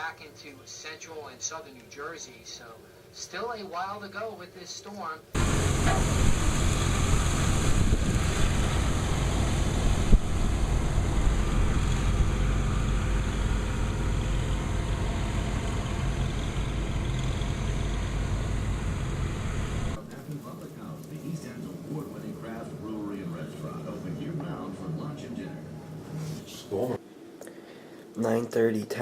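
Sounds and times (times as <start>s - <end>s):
blizzard wind buffeting microphone: 5.4s - 20.0s.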